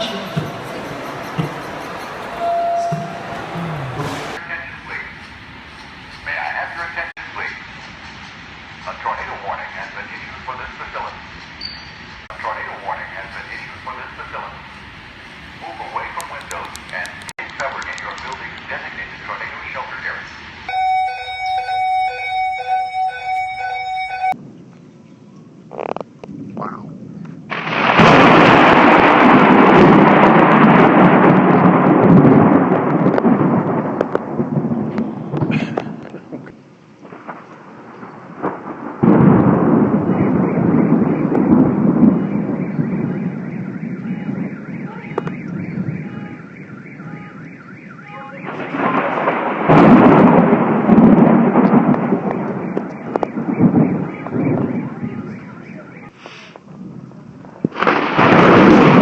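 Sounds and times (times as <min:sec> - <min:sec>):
faint car alarm: 0:00.0 - 0:05.0, 0:20.7 - 0:24.4, 0:40.0 - 0:49.3, 0:51.8 - 0:56.2
rolling thunder: 0:00.0 - 0:11.4, 0:26.2 - 0:59.0.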